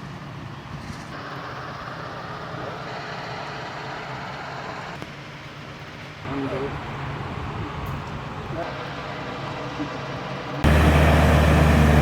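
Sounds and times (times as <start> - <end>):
diesel engine running: 1.2 - 12.0.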